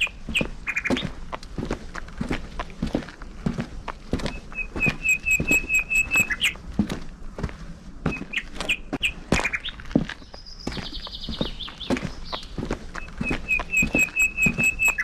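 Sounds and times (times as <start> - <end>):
bird trill: 0.0 - 1.1, 4.2 - 6.6, 8.1 - 15.0
songbird singing: 0.0 - 1.3, 3.8 - 6.6, 8.0 - 15.0
footsteps walking: 0.0 - 15.0.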